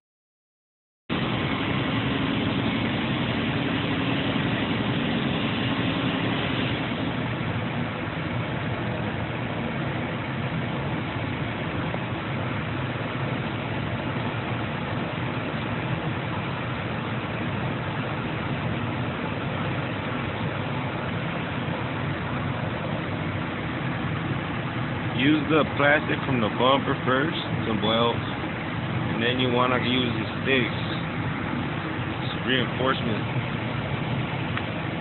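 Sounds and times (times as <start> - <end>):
hot-air blower hissing: 1.2 - 7.5.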